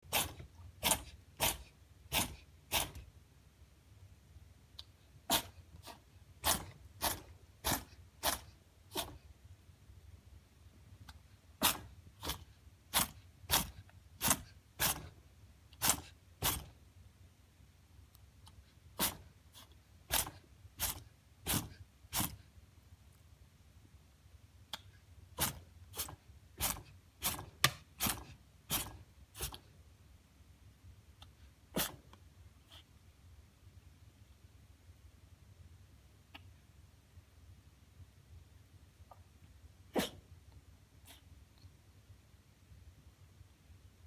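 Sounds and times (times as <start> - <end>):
rabbit sneezing: 0.0 - 3.1, 5.2 - 9.3, 11.0 - 15.2, 15.8 - 16.8, 18.9 - 22.5, 24.7 - 29.8, 31.7 - 32.9, 39.8 - 40.4, 41.0 - 41.4.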